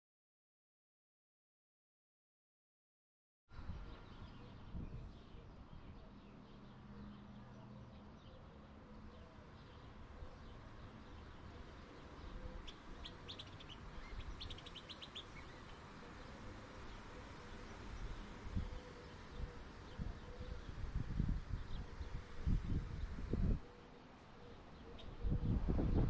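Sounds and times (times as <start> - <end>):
bird chirping rapidly: 12.6 - 15.8.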